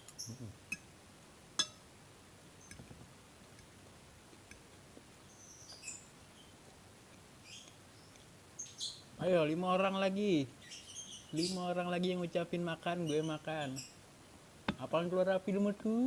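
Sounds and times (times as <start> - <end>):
small birds chirping: 0.0 - 0.9, 5.2 - 14.2.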